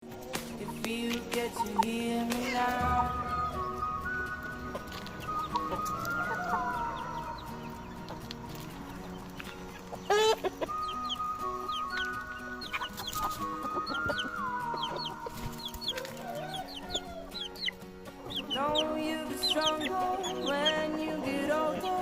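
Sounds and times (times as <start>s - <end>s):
chickens clucking: 0.0s - 22.0s
rooster crowing: 5.3s - 7.8s, 15.9s - 17.4s.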